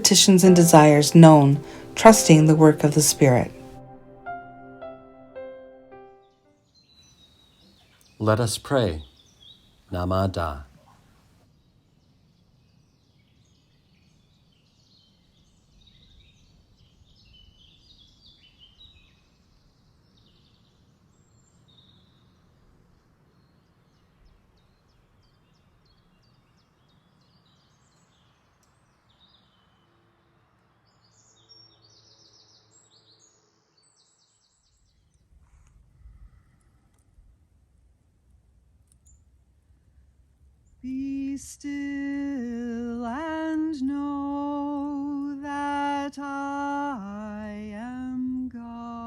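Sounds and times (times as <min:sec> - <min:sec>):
small birds chirping: 0:00.0 - 0:03.8, 0:06.6 - 0:37.2
low steady background noise: 0:00.0 - 0:04.4, 0:06.6 - 0:49.0.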